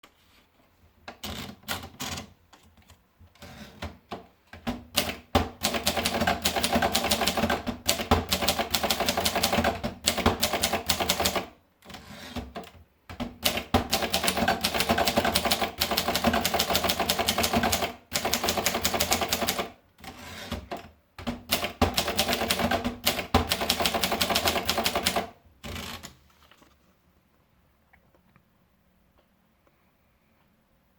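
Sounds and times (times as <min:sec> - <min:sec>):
typewriter keystrokes: 0:04.6 - 0:11.5, 0:12.3 - 0:19.7, 0:20.6 - 0:26.2.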